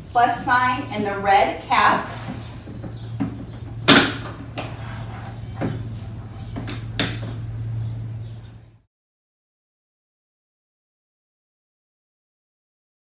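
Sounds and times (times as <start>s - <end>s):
steady low hum: 0.0s - 8.9s.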